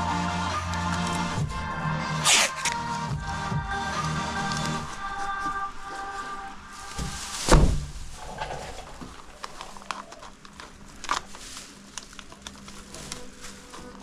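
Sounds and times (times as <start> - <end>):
heavy thump: 6.9 - 9.3.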